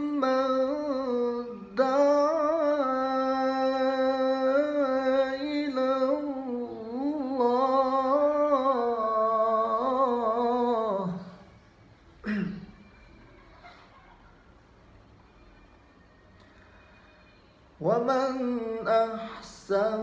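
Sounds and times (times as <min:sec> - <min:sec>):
person chanting: 0:00.0 - 0:11.4.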